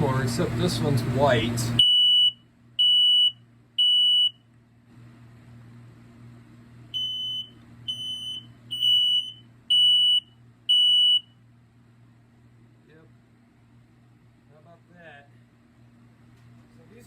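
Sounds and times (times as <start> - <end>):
smoke alarm beeping: 1.8 - 4.4, 6.9 - 11.4.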